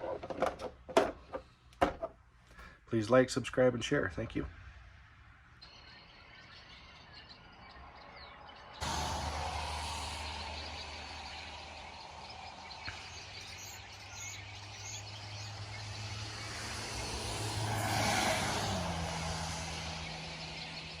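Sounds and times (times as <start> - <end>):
vehicle engine passing by: 8.4 - 21.0.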